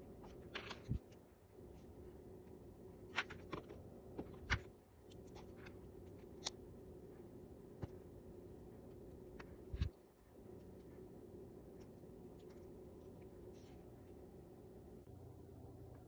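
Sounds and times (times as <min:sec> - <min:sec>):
faint steady hum: 0:00.0 - 0:16.0.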